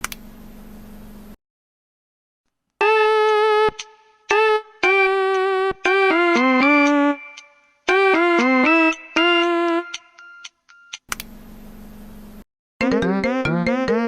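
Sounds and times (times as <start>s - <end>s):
buzzy horn-like melody: 12.8s - 14.0s.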